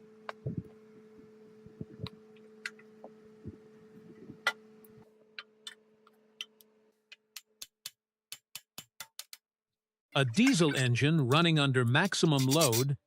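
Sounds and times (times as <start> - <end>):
steady low hum: 0.0 - 7.1.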